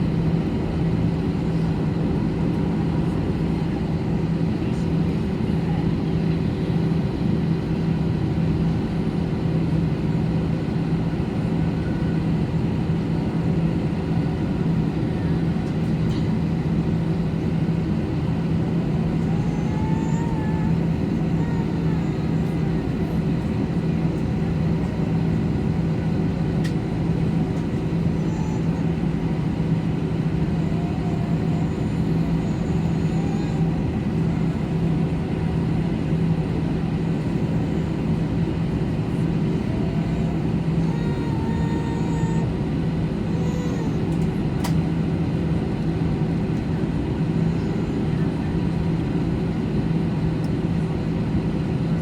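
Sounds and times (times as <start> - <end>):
low cabin hum: 14.1 - 44.9.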